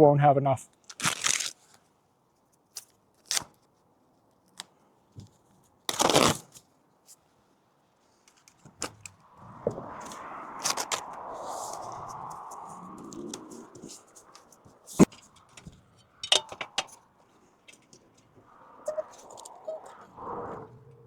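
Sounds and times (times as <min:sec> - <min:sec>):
tape tearing: 0:00.8 - 0:01.8, 0:02.7 - 0:03.6, 0:05.9 - 0:06.6, 0:10.6 - 0:11.0.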